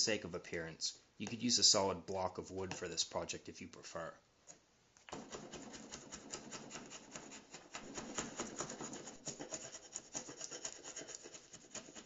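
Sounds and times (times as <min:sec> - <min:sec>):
hand tool scraping plywood: 0:05.1 - 0:12.0.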